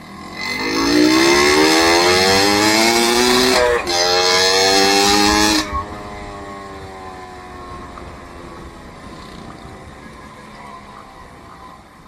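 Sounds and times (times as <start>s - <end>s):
vehicle engine revving: 0.0s - 7.8s.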